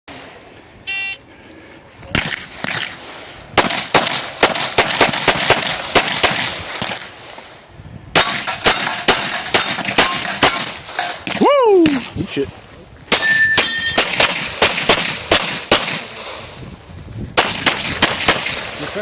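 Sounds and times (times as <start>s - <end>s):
shot timer beep: 0.9s - 1.2s
pistol firing rapid shots: 3.6s - 7.2s, 8.2s - 11.4s, 13.9s - 16.3s, 17.4s - 19.0s.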